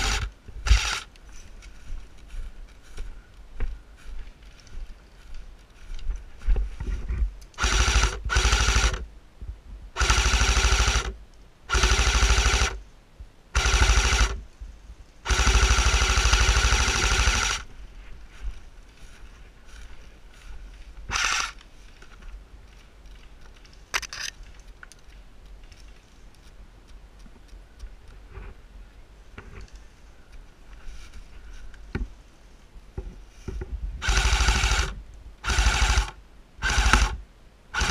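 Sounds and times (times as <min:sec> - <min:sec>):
airsoft guns firing full-auto bursts: 0:07.6 - 0:09.0, 0:10.0 - 0:12.8, 0:13.6 - 0:14.4, 0:15.2 - 0:17.6, 0:34.0 - 0:37.2.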